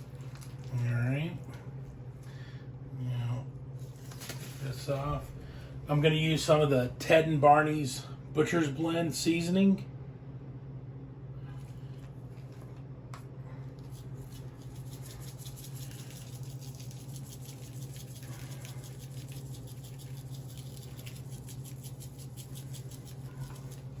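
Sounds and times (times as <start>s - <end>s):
steady low hum: 0.0s - 24.0s
seasoning shaker rattling: 13.8s - 24.0s.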